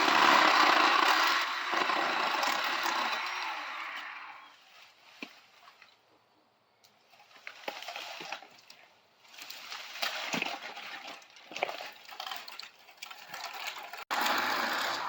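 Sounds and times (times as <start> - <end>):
bamboo leaves rustling: 4.5 - 6.0, 6.9 - 14.0.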